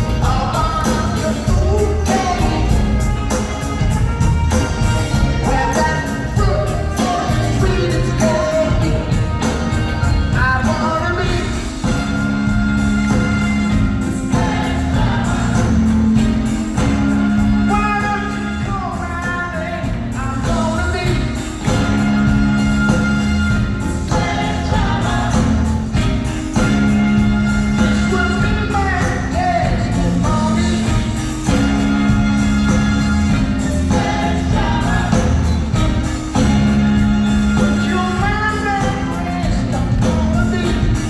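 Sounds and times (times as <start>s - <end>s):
man singing lead vocal: 0.0s - 3.2s, 5.2s - 9.6s, 10.3s - 13.3s, 16.8s - 23.4s, 27.7s - 31.7s, 37.2s - 41.0s
backing singers: 0.0s - 41.0s
live rock band playing: 0.0s - 41.0s.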